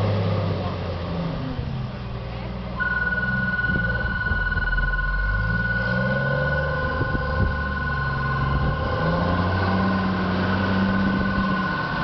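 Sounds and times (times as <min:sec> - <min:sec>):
snowplough engine running: 0:00.0 - 0:12.0
steady high-pitched tones: 0:02.8 - 0:12.0.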